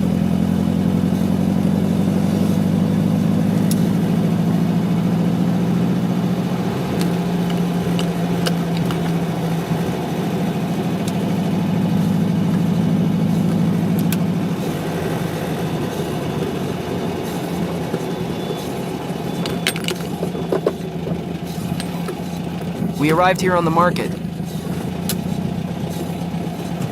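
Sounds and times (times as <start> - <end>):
car engine drone from cabin: 0.0 - 26.9.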